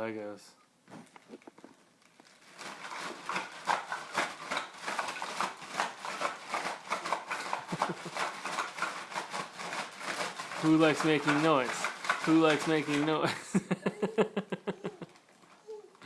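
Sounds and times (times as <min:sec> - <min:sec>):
plastic bricks clattering: 0:01.1 - 0:13.6.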